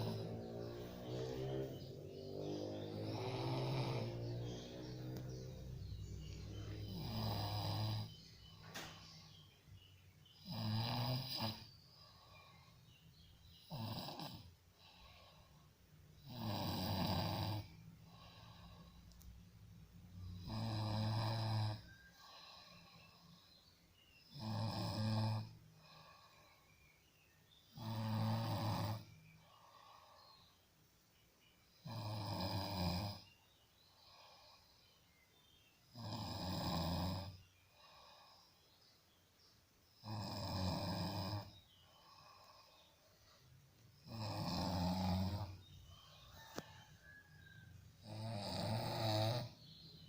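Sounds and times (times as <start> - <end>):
person snoring: 0.0 - 9.4, 10.3 - 15.6, 16.2 - 19.3, 20.1 - 23.6, 24.3 - 26.6, 27.7 - 30.5, 31.8 - 33.3, 35.9 - 38.4, 40.0 - 42.9, 44.0 - 49.9
faint breathing: 0.0 - 10.8, 11.6 - 13.6, 14.5 - 16.2, 17.5 - 24.3, 25.4 - 28.3, 28.9 - 31.8, 33.2 - 35.9, 37.3 - 40.0, 40.8 - 50.0.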